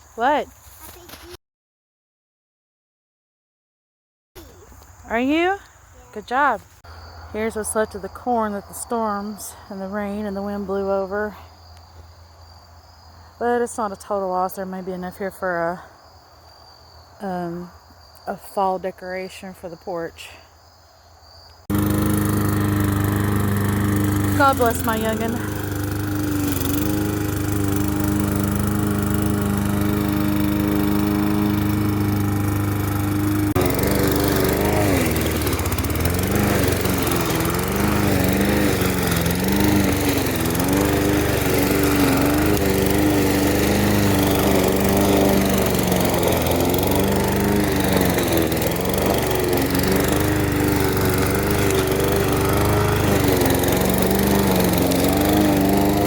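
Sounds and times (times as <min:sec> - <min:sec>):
lawn mower engine running: 0:04.4 - 0:11.4, 0:21.7 - 0:56.0.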